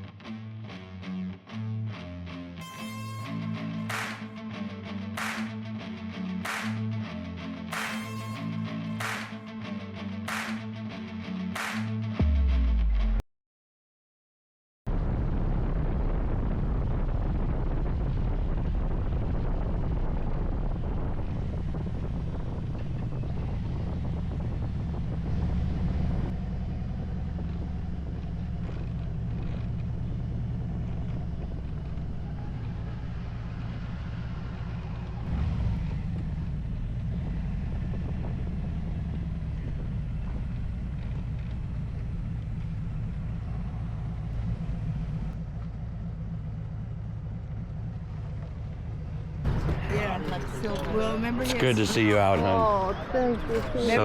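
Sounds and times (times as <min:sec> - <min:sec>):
motorcycle engine running: 0:17.0 - 0:51.4.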